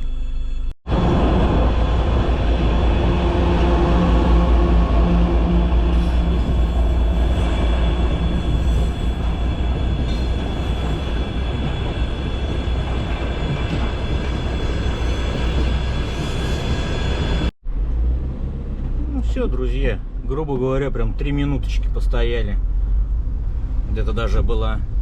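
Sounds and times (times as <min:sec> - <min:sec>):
freight train rumbling and rattling: 0:00.9 - 0:17.6.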